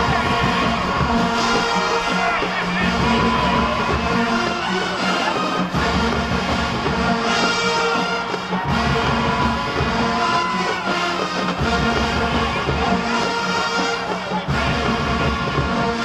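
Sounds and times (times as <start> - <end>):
marching band playing: 0.0 - 16.0.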